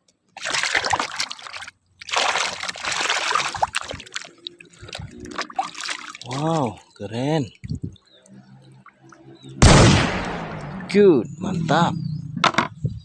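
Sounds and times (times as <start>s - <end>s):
water trickling: 0.0s - 9.6s
water splashing: 0.3s - 11.0s.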